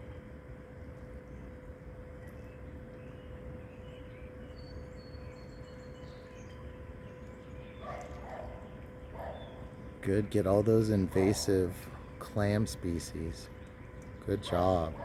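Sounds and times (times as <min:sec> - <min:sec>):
ducks feeding in water: 0:00.0 - 0:15.0
faint hum: 0:00.0 - 0:15.0
low outdoor rumble: 0:00.0 - 0:15.0
faint bird chirps: 0:02.3 - 0:09.8.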